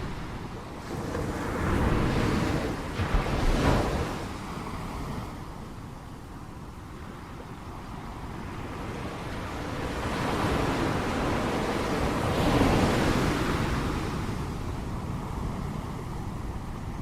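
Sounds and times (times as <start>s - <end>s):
ocean waves breaking on shore: 0.0s - 17.0s.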